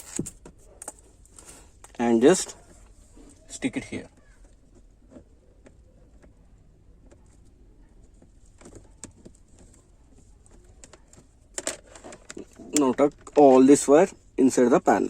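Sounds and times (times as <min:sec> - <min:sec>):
faint clicks and taps: 0:00.0 - 0:13.7.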